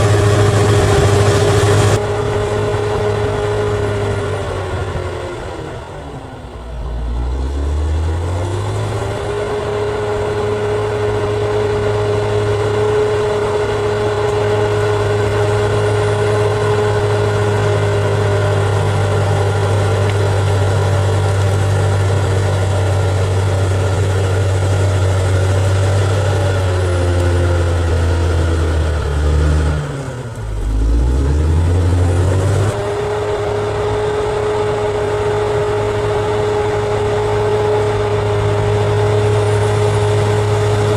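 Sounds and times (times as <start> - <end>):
bulldozer diesel engine revving: 0.0 - 40.9.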